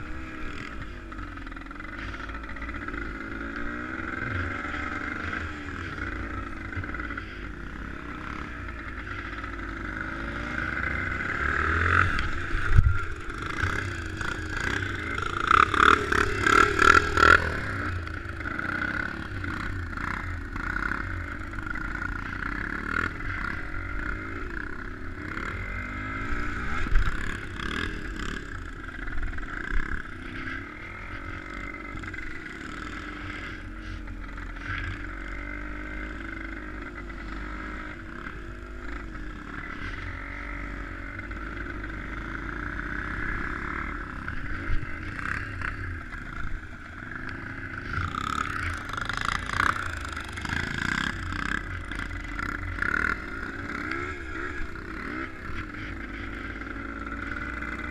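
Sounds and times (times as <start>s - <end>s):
vehicle engine running: 0.0s - 57.9s.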